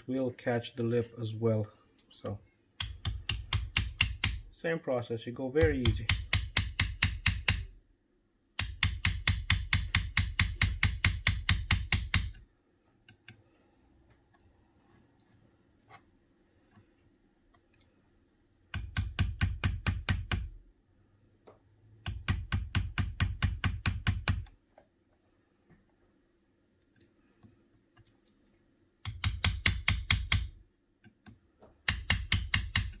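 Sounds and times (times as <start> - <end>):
hammer tapping on spatula: 2.8 - 4.5, 5.6 - 7.7, 8.6 - 12.4, 18.7 - 20.6, 22.0 - 24.5, 29.0 - 30.6, 31.8 - 33.0.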